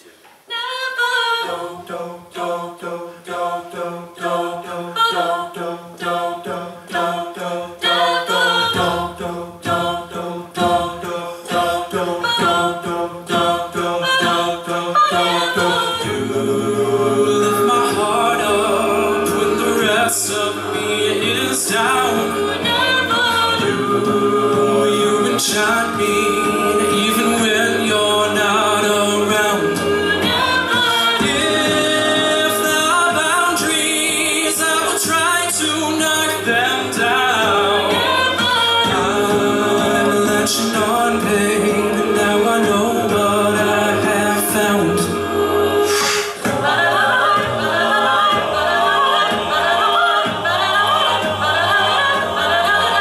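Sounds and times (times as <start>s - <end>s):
a cappella group singing: 0.0s - 53.0s
sharp percussive beats: 7.4s - 53.0s.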